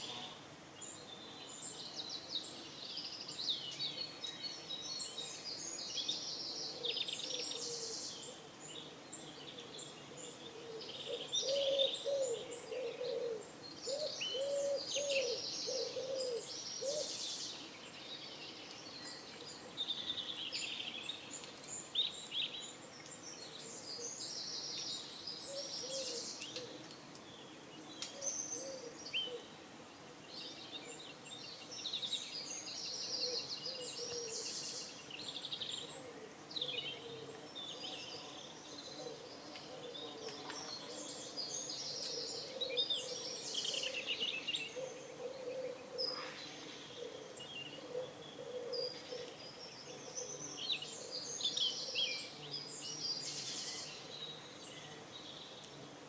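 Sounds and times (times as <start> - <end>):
small birds chirping: 0.0 - 56.0
pigeon cooing: 11.4 - 17.1, 44.8 - 46.2, 47.0 - 49.3.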